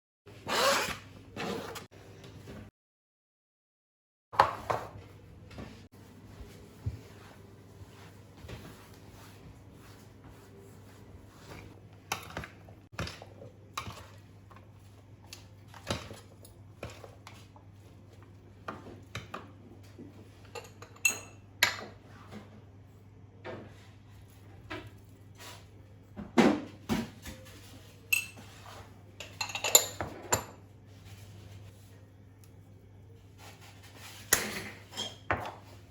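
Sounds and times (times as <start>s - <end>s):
dishes and cutlery clinking: 27.3s - 30.7s.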